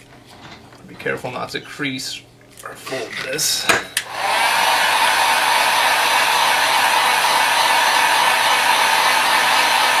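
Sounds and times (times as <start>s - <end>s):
hot-air gun blowing: 4.0s - 10.0s.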